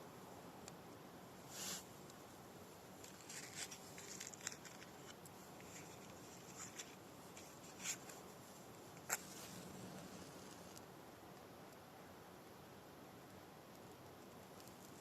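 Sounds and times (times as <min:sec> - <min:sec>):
wood chips and bark rustling: 0:03.0 - 0:08.2.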